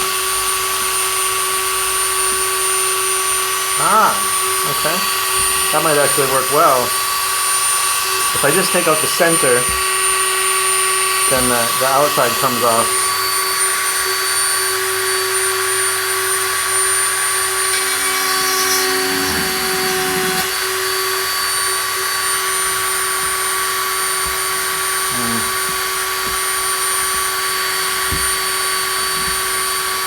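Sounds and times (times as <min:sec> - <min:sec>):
rotary tool grinding plastic: 0:17.4 - 0:20.6.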